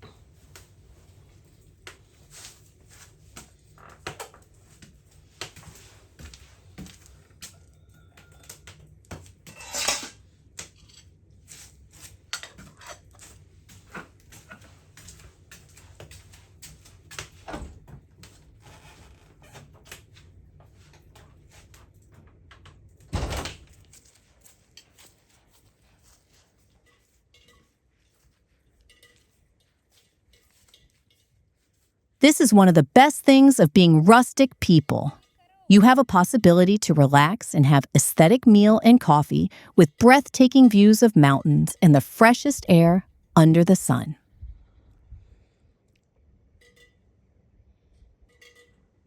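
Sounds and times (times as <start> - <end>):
tableware clinking: 9.5 - 10.1.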